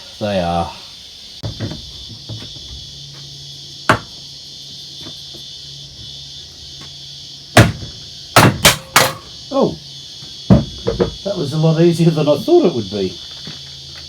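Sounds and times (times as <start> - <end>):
sharp knocks on chair cylinder: 3.9 - 4.2, 7.6 - 9.3, 10.5 - 11.2.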